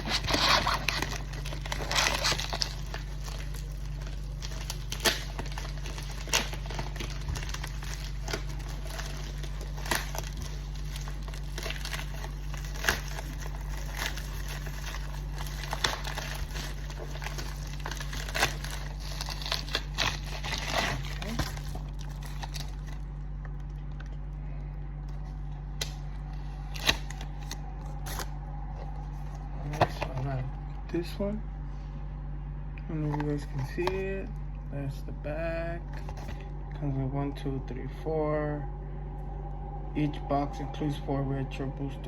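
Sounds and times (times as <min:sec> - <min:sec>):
packaging crinkling: 0:00.0 - 0:24.2, 0:25.2 - 0:30.3.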